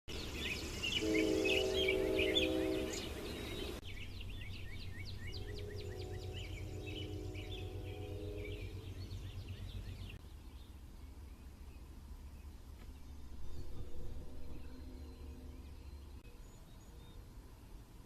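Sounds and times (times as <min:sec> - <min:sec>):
birds chirping: 0:00.1 - 0:18.0
distant locomotive air horn: 0:00.8 - 0:03.9, 0:04.6 - 0:10.2, 0:13.4 - 0:16.2.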